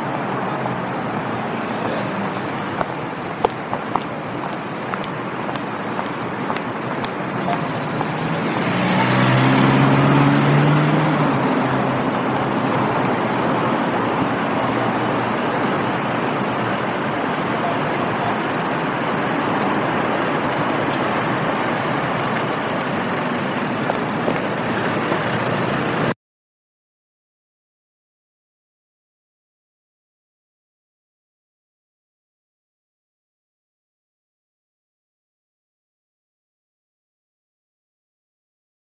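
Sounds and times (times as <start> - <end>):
passing cars and tyre noise: 0.0 - 26.2
vehicle engine passing close: 7.0 - 26.2.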